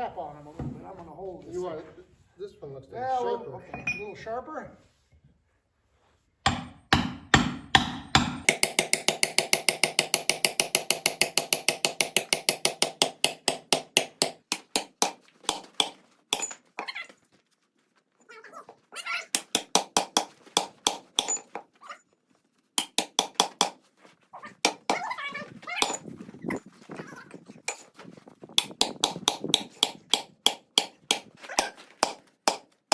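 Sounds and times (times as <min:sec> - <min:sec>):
hammer striking steel wedge: 0:06.5 - 0:16.6, 0:19.4 - 0:21.6, 0:22.8 - 0:23.8, 0:24.6 - 0:25.0, 0:28.6 - 0:32.7.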